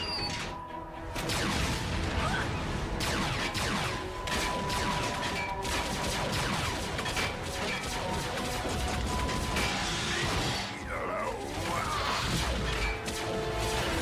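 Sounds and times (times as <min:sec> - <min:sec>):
background score music: 0:00.0 - 0:14.0
weapon fire: 0:01.2 - 0:10.8.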